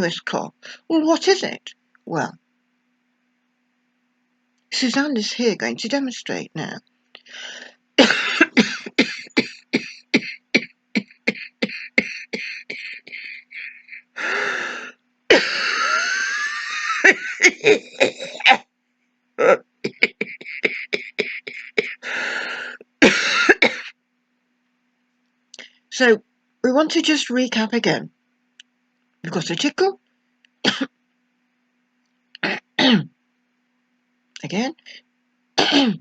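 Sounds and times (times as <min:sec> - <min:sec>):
woman hacking cough: 0:08.0 - 0:13.7, 0:15.3 - 0:16.2, 0:17.0 - 0:18.6, 0:19.4 - 0:22.0, 0:23.0 - 0:23.9, 0:30.6 - 0:30.9, 0:32.4 - 0:33.1, 0:35.6 - 0:36.0
wheezing gasp for breath: 0:11.0 - 0:16.0, 0:20.2 - 0:22.9.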